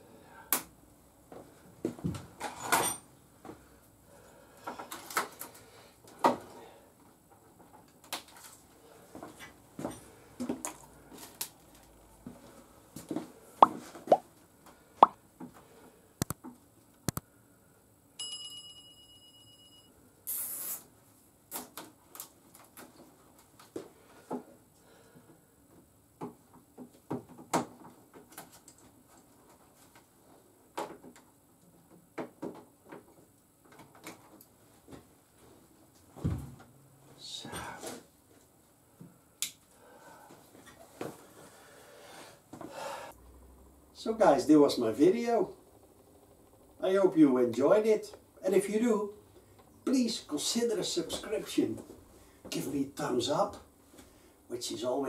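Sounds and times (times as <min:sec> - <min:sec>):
short hiss: 0:20.2 - 0:20.9.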